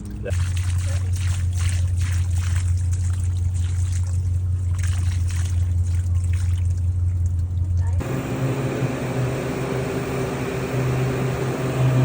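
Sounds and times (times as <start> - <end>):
water pouring and splashing: 0.0 - 8.0
low motor hum: 0.0 - 12.0.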